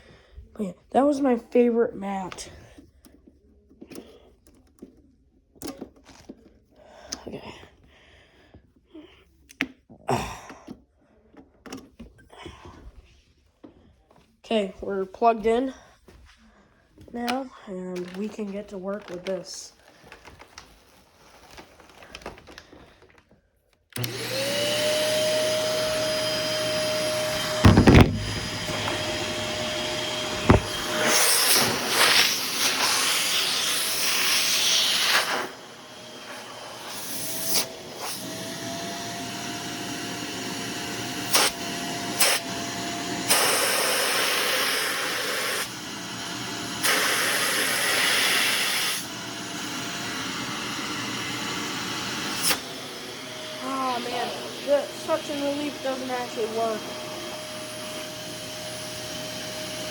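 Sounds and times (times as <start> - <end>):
vacuum cleaner motor whine: 23.9 - 59.9.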